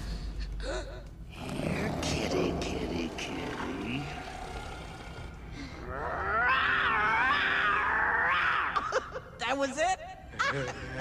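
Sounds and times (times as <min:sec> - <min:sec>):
cartoon lion cub growl: 0:01.4 - 0:08.8.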